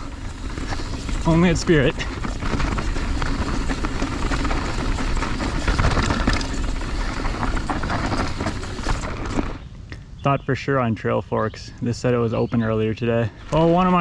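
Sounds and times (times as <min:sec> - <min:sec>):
bike clattering over bumps: 0:00.0 - 0:09.7
tyres rolling over dirt: 0:00.0 - 0:09.8, 0:12.0 - 0:14.0.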